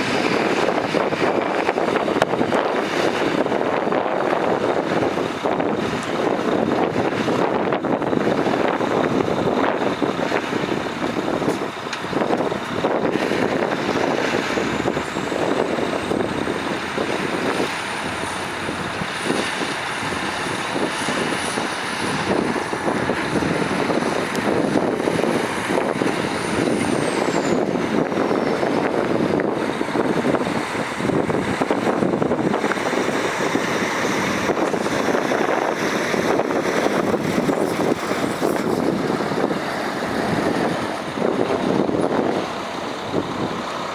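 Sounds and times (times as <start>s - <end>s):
diesel machinery running: 0.0s - 43.9s.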